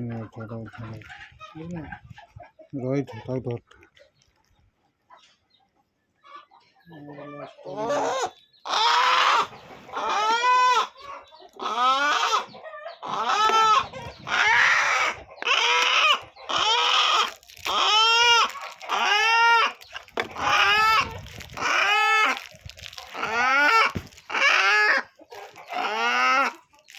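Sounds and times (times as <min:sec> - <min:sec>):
chicken squawking: 0:07.2 - 0:26.9.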